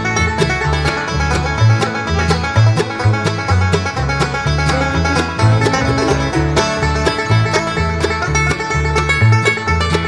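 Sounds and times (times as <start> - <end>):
upbeat bluegrass plucked-string music: 0.0 - 10.0.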